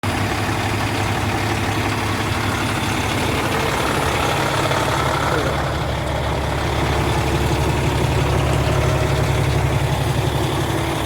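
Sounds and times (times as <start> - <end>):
diesel engine idling: 0.0 - 11.0.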